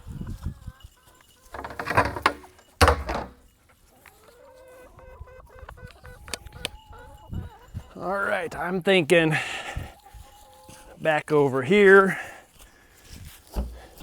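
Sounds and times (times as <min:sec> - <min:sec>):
chickens clucking: 0:00.0 - 0:08.3, 0:09.8 - 0:11.0.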